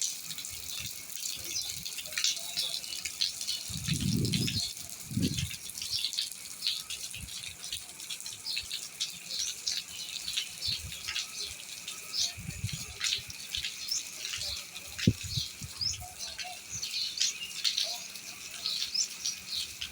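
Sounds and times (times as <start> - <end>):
small birds chirping: 0.6 - 19.9.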